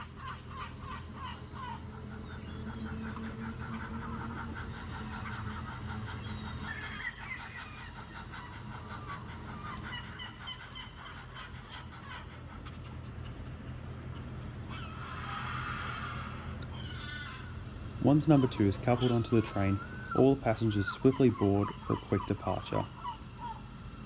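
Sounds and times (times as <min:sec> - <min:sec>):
birds chirping: 0:00.0 - 0:24.0
steady low hum: 0:00.0 - 0:24.0
burst of hiss: 0:14.9 - 0:16.6.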